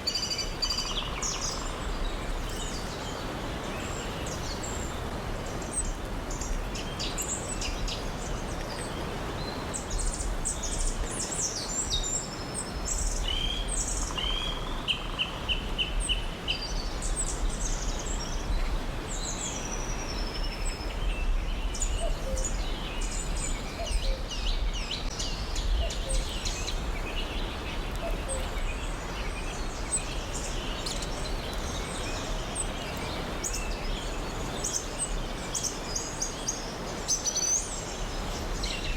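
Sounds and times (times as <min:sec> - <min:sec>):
background hiss and rumble: 0:00.0 - 0:38.9
birds chirping and calling: 0:21.7 - 0:38.9.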